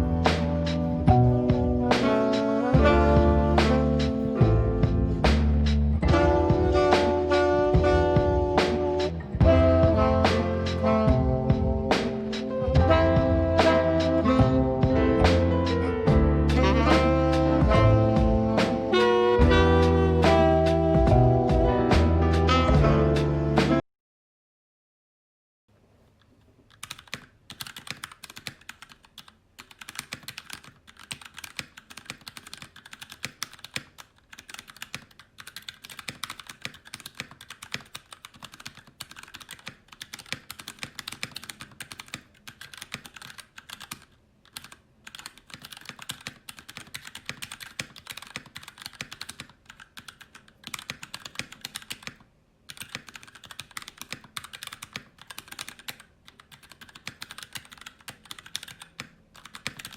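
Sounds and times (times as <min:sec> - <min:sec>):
typing on mechanical keyboard: 0:26.7 - 0:59.9.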